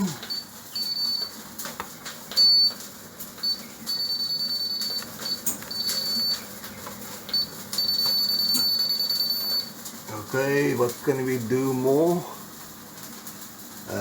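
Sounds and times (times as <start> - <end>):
treadmill console beeping: 0.0 - 9.8.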